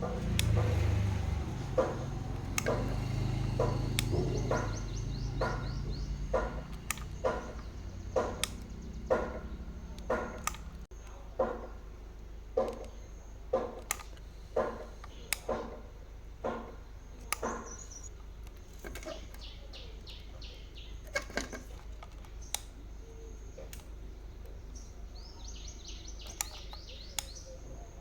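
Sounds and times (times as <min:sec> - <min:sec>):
sharp knocks and taps: 0:00.0 - 0:11.8, 0:12.5 - 0:18.1
bird chirping: 0:00.0 - 0:28.0.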